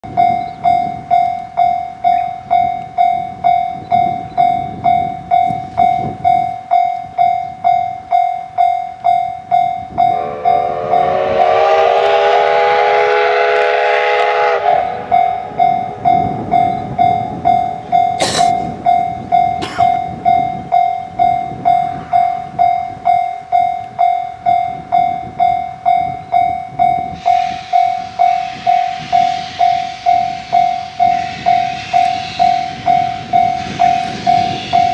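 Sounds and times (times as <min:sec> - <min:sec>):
steam locomotive whistle: 0:09.8 - 0:18.8, 0:26.0 - 0:34.9
rushing hiss of train: 0:10.0 - 0:23.1, 0:26.6 - 0:34.9.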